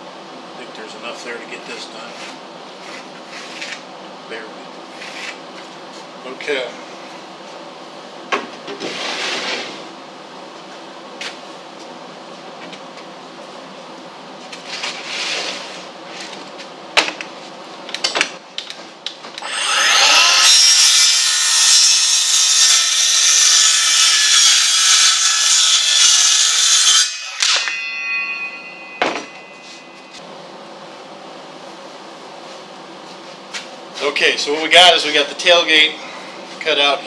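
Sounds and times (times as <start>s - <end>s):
power saw cutting wood: 19.4s - 28.3s
saw blade winding down whine: 19.4s - 30.2s.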